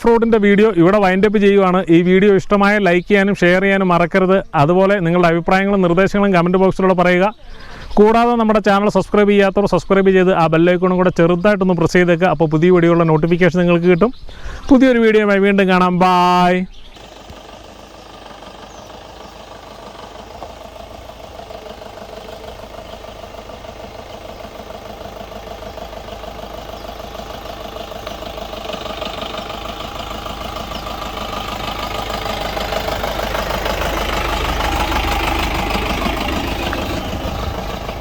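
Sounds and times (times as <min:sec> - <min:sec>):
engine running: 0:16.2 - 0:38.0.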